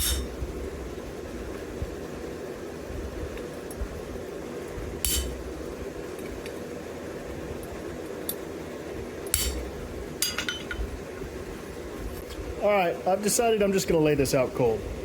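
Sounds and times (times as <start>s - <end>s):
hammer ringing on anvil: 0.0s - 0.3s, 5.1s - 5.4s
steady background hum: 0.0s - 15.0s.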